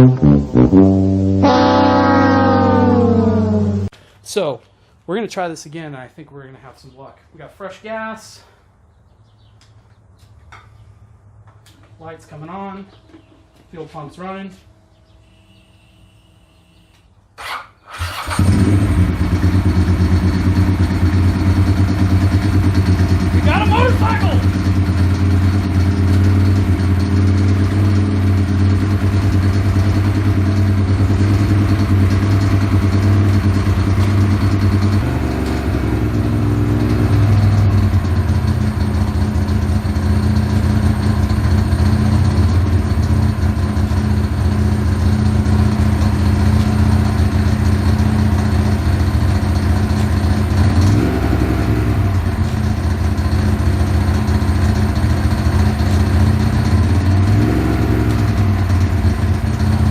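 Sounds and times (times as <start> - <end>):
motorcycle engine idling: 18.1 - 51.0, 51.9 - 57.3, 58.2 - 59.9.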